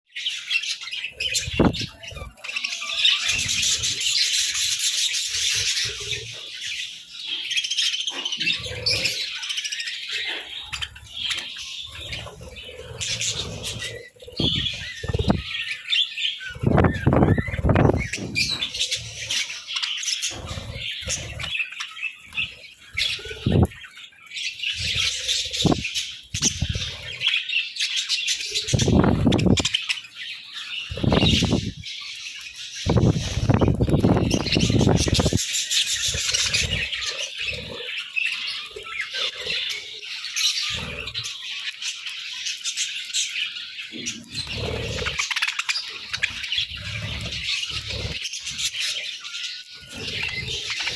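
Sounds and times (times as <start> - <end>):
budgerigars chattering: 0.1 - 50.9
wing flapping: 12.0 - 15.4.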